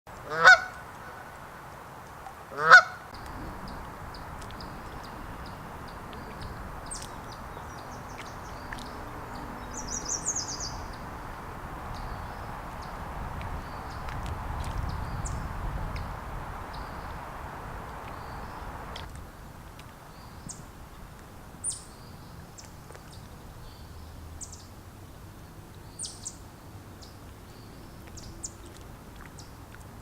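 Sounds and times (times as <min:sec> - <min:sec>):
steady low hiss: 0:00.1 - 0:30.0
goose honking: 0:00.2 - 0:01.2, 0:02.5 - 0:03.0
songbirds chirping faintly: 0:00.5 - 0:30.0.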